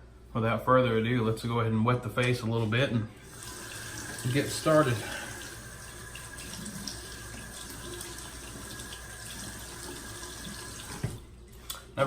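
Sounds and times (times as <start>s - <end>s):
tap running into sink: 3.6s - 4.4s, 7.6s - 11.2s.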